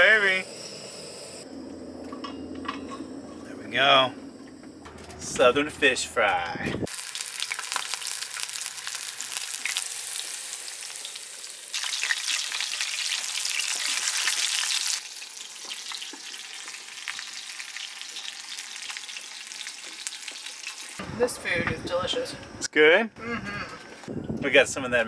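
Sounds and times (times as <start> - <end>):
food frying in hot oil: 6.9 - 21.0.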